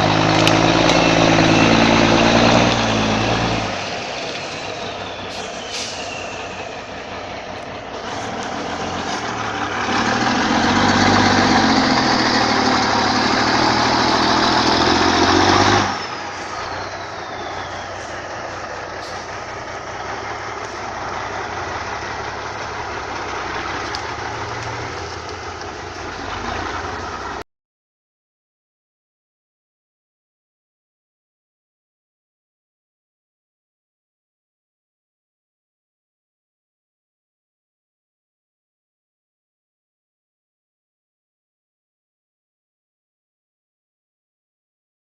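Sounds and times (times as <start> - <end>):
diesel truck engine running: 0.0 - 27.4.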